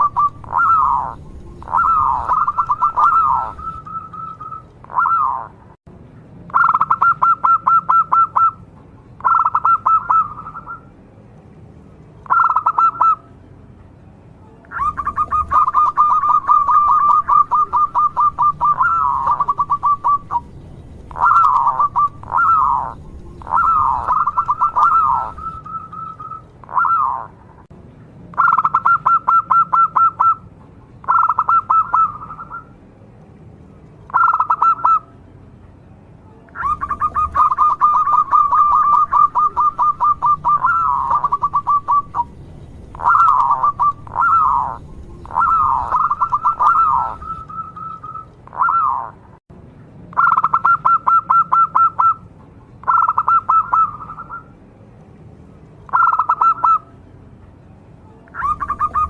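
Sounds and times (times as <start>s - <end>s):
dove cooing: 0.0s - 5.6s, 6.6s - 8.6s, 9.2s - 10.8s, 12.3s - 13.2s, 14.7s - 27.4s, 31.1s - 32.6s, 34.1s - 35.0s, 36.6s - 49.2s, 52.8s - 54.4s, 55.9s - 56.8s, 58.4s - 59.0s.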